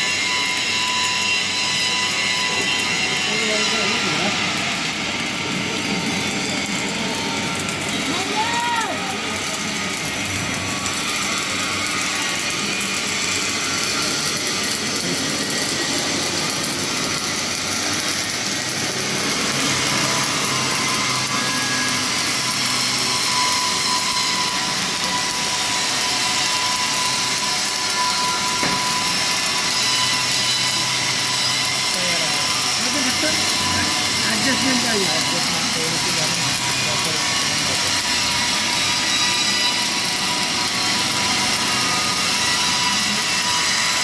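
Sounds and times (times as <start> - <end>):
welding arc hissing and crackling: 0.0 - 44.0.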